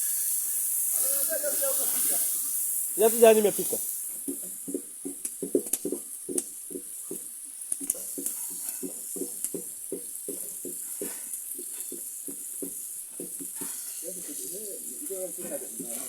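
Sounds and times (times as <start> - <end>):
food sizzling in a pan: 0.0 - 16.0
utensil clicking against pan: 4.2 - 13.9.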